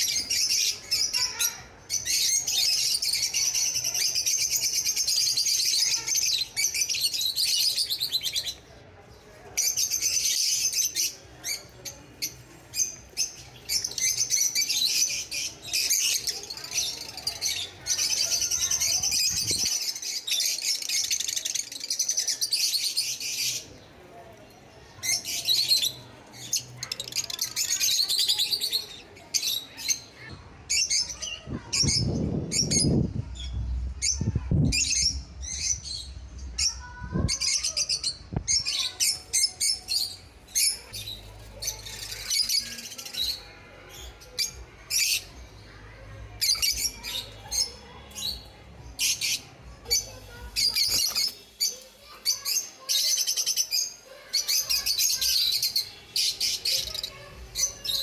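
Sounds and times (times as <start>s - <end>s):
lovebirds chattering: 0.0s - 33.0s, 36.8s - 58.0s
low rumbling noise: 31.9s - 37.3s.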